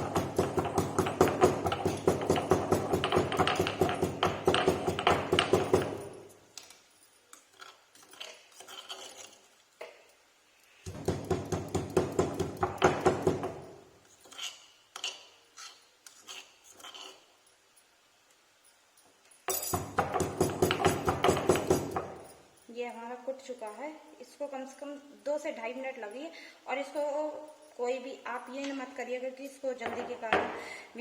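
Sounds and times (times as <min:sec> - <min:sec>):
pestle pounding in a mortar: 0:00.0 - 0:06.1, 0:10.9 - 0:13.6, 0:19.5 - 0:22.2.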